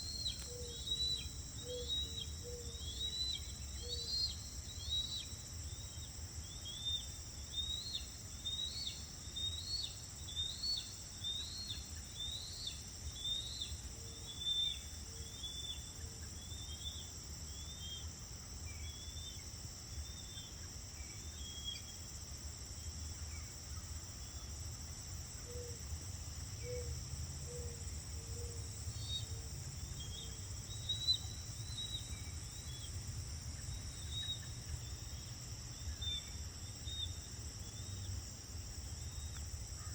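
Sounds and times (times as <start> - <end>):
bird chirping: 0.0 - 18.1
crickets trilling: 0.0 - 39.9.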